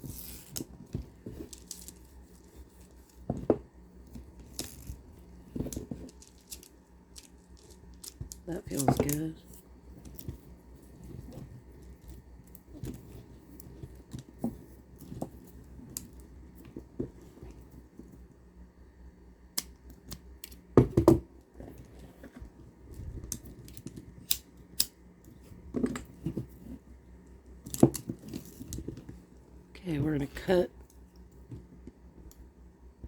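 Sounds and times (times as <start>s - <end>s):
plastic beads clicking and rattling: 5.6s - 9.4s.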